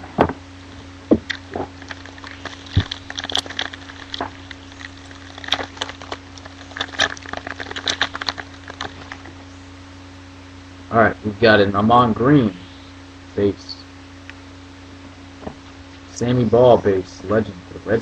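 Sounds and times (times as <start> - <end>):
steady low hum: 0.0 - 18.0
cardboard and wrapper crackling: 1.2 - 9.5.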